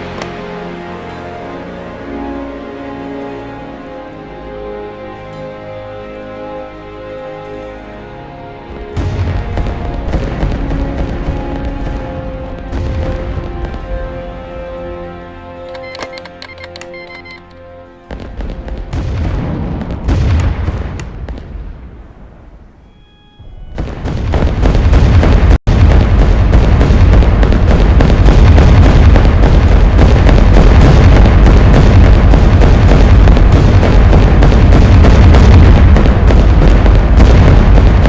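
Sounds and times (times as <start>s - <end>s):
plane engine roar: 0.0s - 20.2s.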